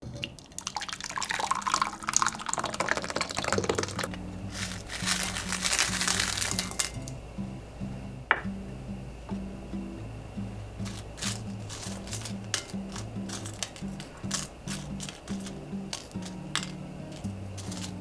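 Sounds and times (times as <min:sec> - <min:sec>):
crackling liquid noise: 0:00.0 - 0:07.2, 0:10.8 - 0:18.0.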